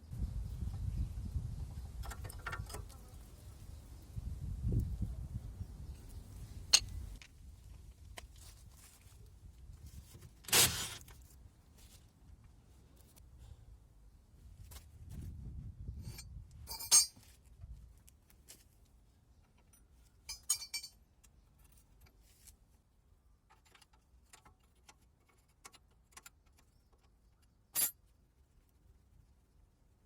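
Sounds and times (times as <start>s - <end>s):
metal hand tools clinking: 16.1s - 17.2s, 20.3s - 21.0s, 27.8s - 28.0s.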